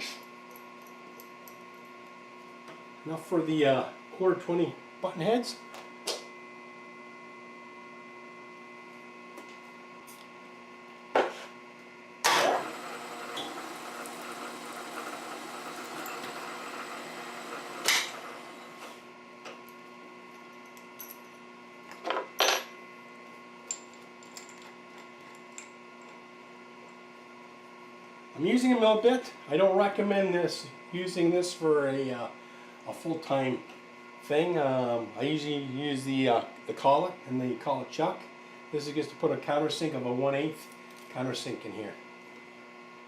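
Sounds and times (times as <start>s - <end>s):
milling machine humming: 11.8s - 20.6s
drill bit cutting steel: 12.3s - 18.9s.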